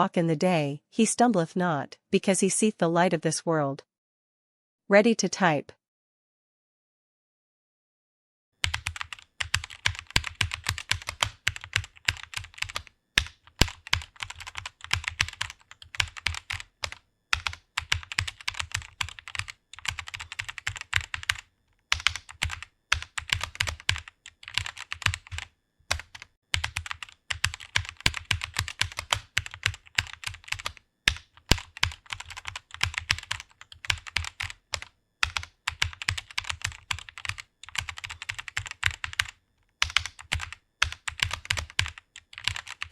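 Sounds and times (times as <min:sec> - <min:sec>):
typing on a computer keyboard: 0:08.6 - 0:42.9.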